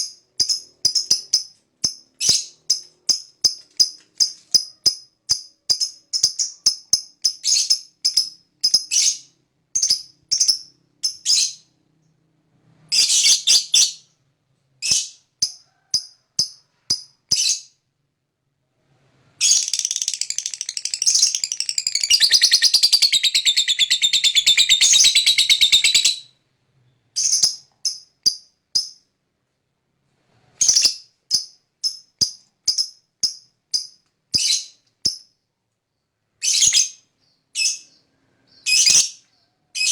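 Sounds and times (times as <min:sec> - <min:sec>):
bird chirping: 0:00.0 - 0:12.1, 0:19.4 - 0:29.0, 0:35.9 - 0:39.9
bird chattering trill: 0:19.5 - 0:26.2.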